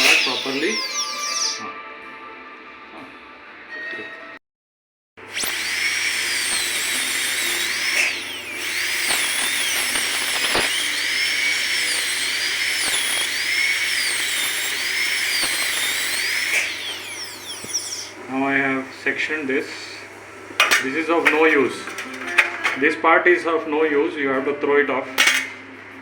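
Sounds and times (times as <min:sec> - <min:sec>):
dental drill whining on metal: 0:00.0 - 0:01.6, 0:05.2 - 0:22.8.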